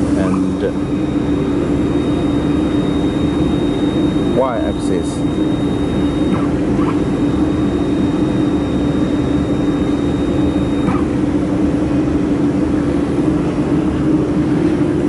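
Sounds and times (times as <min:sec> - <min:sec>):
welding machine humming: 0:00.0 - 0:11.6
thin high whine: 0:00.0 - 0:15.0.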